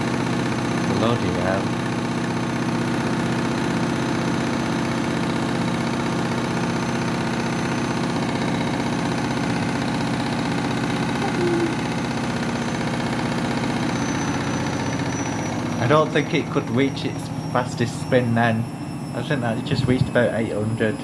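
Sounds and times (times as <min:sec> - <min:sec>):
washing machine spinning: 0:00.0 - 0:21.0.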